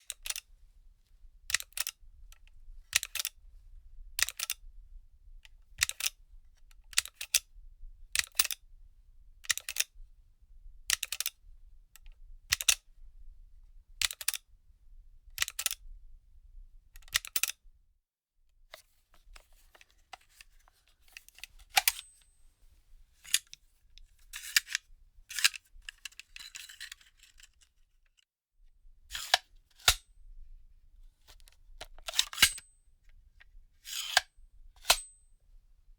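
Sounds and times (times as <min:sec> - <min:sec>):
magazine metallic clicks: 0:34.8 - 0:35.2.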